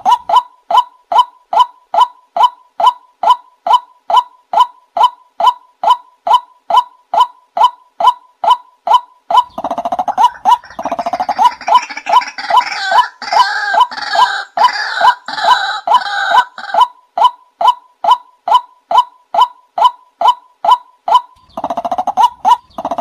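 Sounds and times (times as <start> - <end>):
waterhen repeated wak calls: 0.0 - 23.0
bird stuttering trill: 9.4 - 16.8, 21.1 - 23.0.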